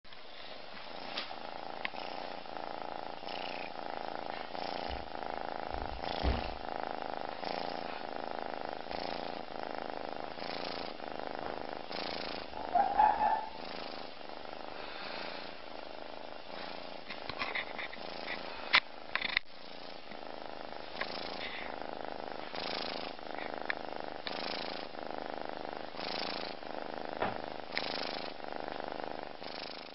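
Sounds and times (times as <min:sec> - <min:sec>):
kitten snoring: 0:00.3 - 0:29.9.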